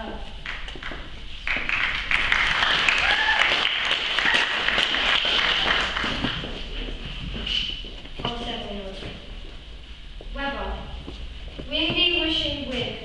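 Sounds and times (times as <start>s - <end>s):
audience applauding: 0.5s - 6.5s.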